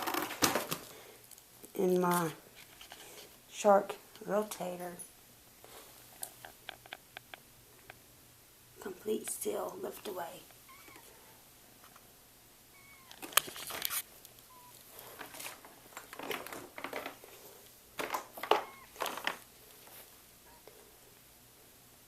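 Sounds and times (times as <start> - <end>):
plastic clicks and knocks: 18.0 - 19.4.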